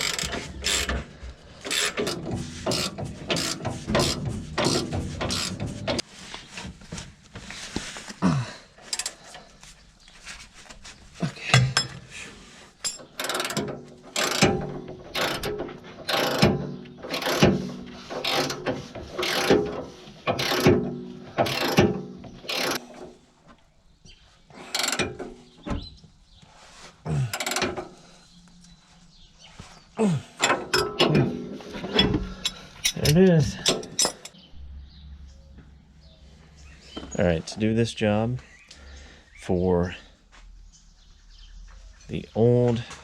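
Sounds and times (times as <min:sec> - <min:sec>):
ratcheting wrench clicking: 0:00.0 - 0:01.0, 0:01.6 - 0:05.6, 0:12.9 - 0:17.5, 0:18.1 - 0:19.6, 0:20.3 - 0:20.7, 0:21.4 - 0:22.9, 0:24.7 - 0:25.2, 0:27.4 - 0:27.8.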